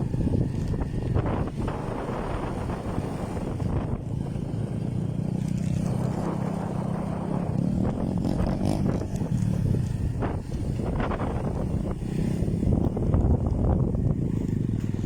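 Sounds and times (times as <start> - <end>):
boat motor running: 0.0 - 15.0
wind buffeting microphone: 0.0 - 15.0.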